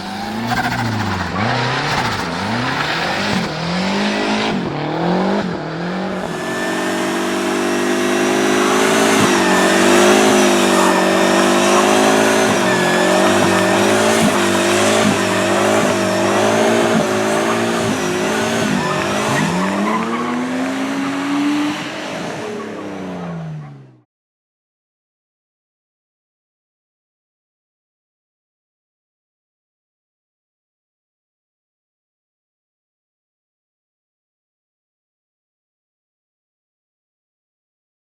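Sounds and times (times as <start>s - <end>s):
tyres squealing: 0.0s - 23.0s
car engine revving hard: 0.0s - 24.0s.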